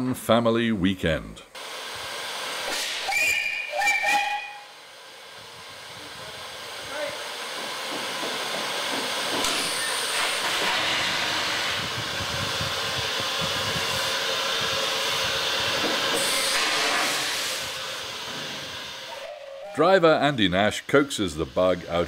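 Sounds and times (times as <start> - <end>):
steam hissing: 1.6 - 22.0
train wheels clattering on rails: 7.4 - 14.0, 15.4 - 17.3.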